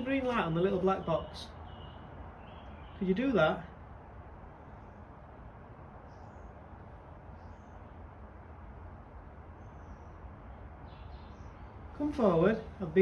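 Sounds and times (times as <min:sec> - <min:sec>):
background hiss and rumble: 0:00.0 - 0:13.0.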